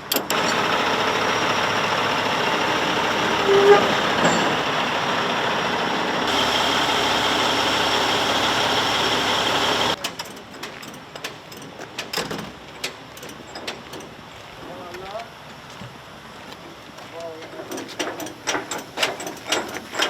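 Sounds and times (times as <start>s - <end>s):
heavy diesel machinery engine: 0.0s - 10.0s
short metal clanks: 3.4s - 4.7s.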